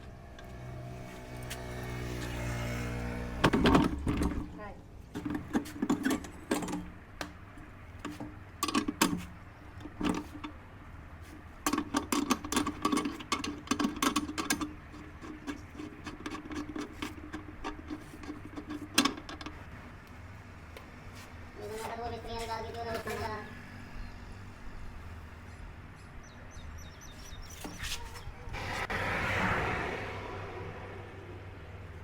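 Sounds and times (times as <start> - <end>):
sharp clicks and knocks: 5.1 - 10.6, 11.6 - 20.9.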